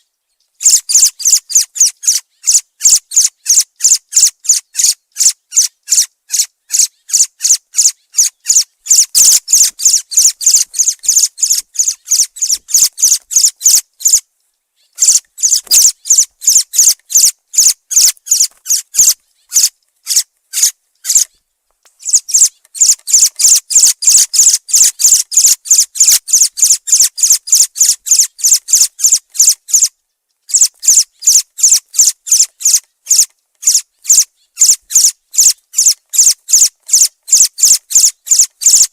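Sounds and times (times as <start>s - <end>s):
thrush calling: 0.6s - 21.3s, 22.0s - 29.9s, 30.5s - 38.9s.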